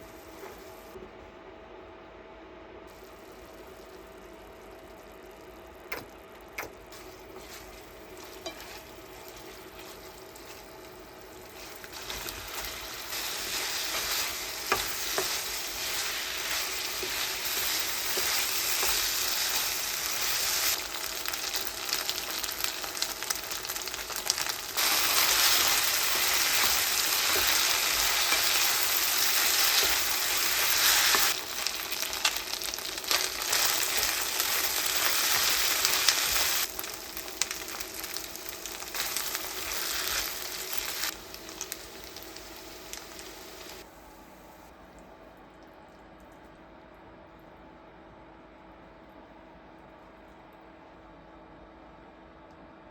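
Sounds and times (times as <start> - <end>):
sausage sizzling in a pan: 2.9 - 44.4.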